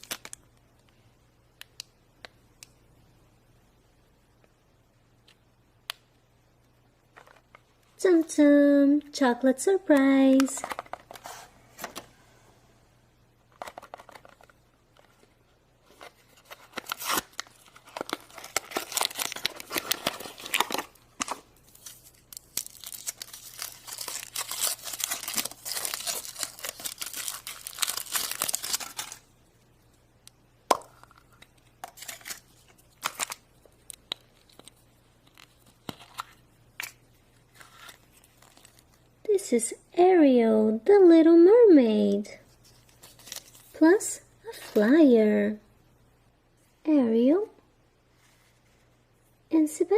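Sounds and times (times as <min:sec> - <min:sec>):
foil wrapper crinkling and tearing: 0:00.0 - 0:00.4, 0:16.0 - 0:29.3, 0:31.8 - 0:39.1, 0:42.8 - 0:43.8.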